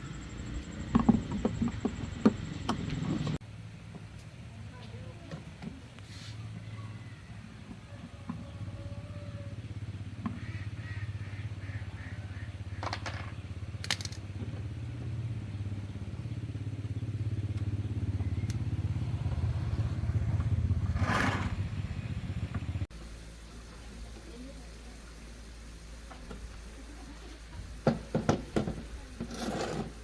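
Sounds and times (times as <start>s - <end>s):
small engine running: 12.8s - 23.3s.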